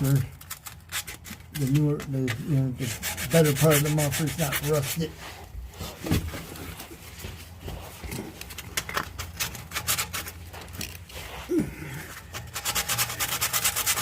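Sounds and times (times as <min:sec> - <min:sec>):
sandpaper scraping metal pipe: 0:00.0 - 0:05.4, 0:09.2 - 0:10.8, 0:12.2 - 0:14.0.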